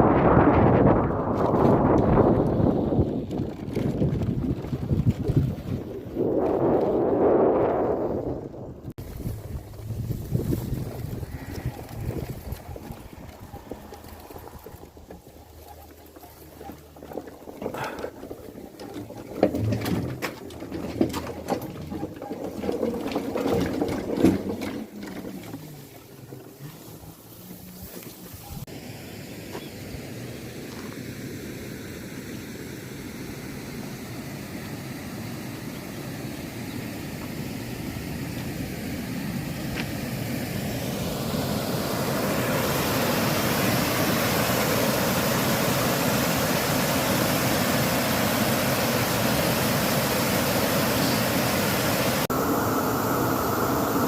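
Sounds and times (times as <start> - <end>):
waterfall rushing: 40.1 - 52.4.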